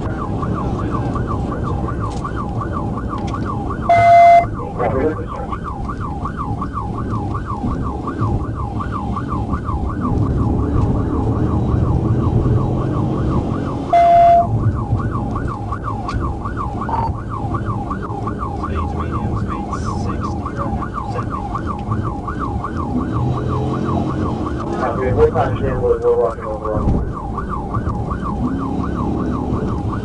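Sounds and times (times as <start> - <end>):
engine and road rumble: 0.0 - 30.0
police siren yelping: 0.0 - 30.0
loud steady tone: 3.8 - 5.6, 10.4 - 14.6, 16.8 - 17.2.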